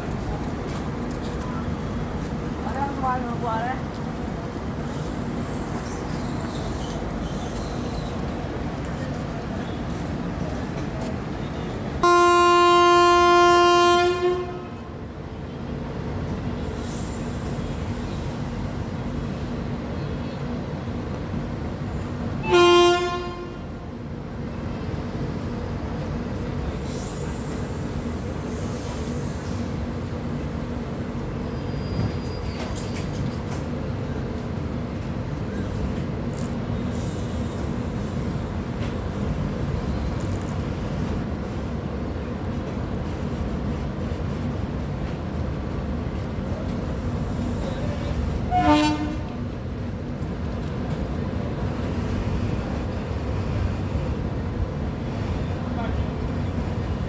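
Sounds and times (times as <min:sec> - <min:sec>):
train rumble: 0:00.0 - 0:57.0
locomotive horn honks: 0:12.0 - 0:14.8, 0:22.4 - 0:23.6, 0:48.5 - 0:49.4.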